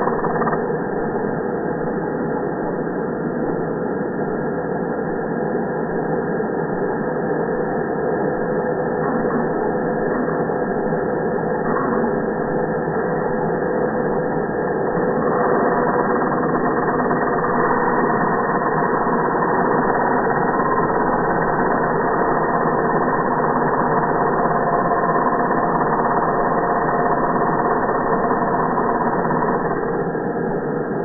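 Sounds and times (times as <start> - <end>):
electric angle grinder running: 15.2 - 29.8.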